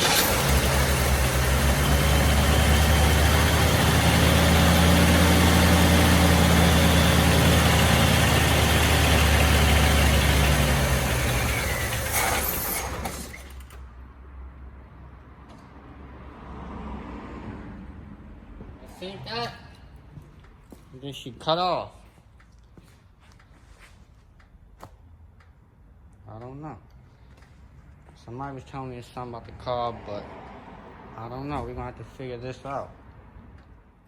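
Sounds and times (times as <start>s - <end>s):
car engine running and stalling: 0.0s - 13.9s.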